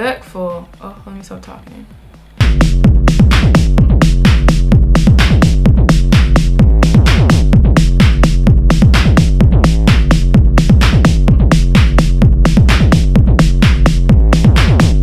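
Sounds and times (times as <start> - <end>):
electronic music with steady beat: 0.0 - 15.0.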